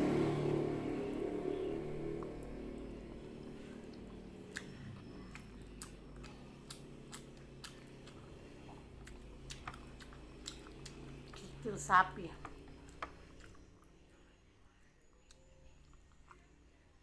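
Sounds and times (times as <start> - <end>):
low hum: 0.0 - 16.8
close chewing with mouth clicks: 3.5 - 11.7, 12.4 - 14.0, 15.1 - 16.7.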